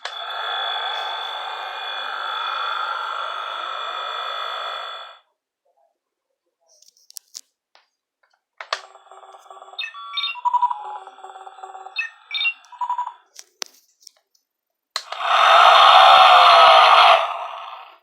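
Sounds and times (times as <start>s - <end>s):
loud noisy burst: 0.0s - 5.2s, 15.1s - 18.0s
tinny electronic beeps and chirps: 9.6s - 13.3s.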